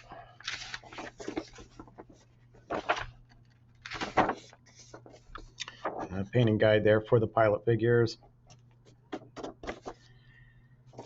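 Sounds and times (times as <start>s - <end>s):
paper pages rustling: 0.4s - 6.1s, 9.3s - 10.2s.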